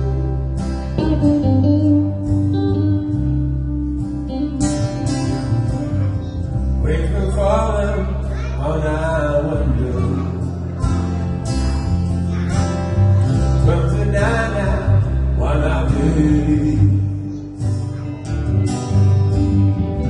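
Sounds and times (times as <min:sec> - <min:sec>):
acoustic guitar: 0:00.0 - 0:20.0
steady bass line: 0:00.0 - 0:20.0
man singing: 0:06.8 - 0:10.8, 0:13.6 - 0:17.7.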